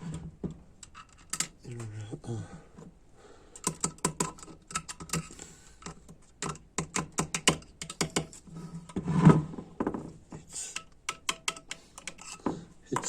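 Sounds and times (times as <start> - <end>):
small metal parts clicking: 3.6 - 8.4, 10.7 - 12.4.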